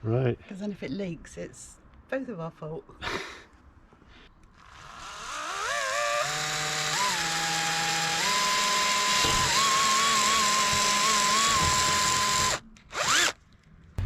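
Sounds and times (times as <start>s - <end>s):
electric drill whining: 4.6s - 13.4s.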